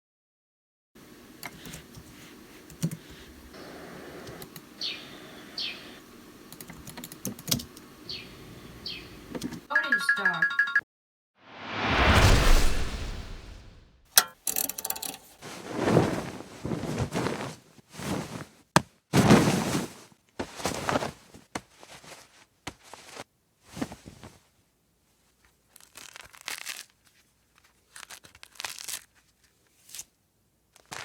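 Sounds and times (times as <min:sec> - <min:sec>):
rustling scraping and knocking: 0:14.5 - 0:18.6.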